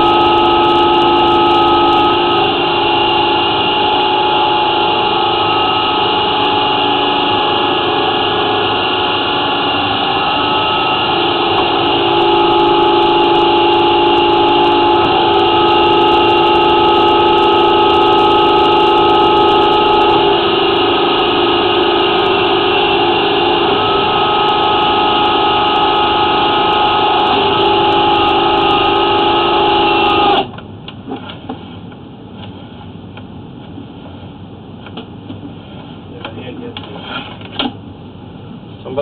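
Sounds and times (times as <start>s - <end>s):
drain-cleaning machine whining: 0.0s - 30.5s.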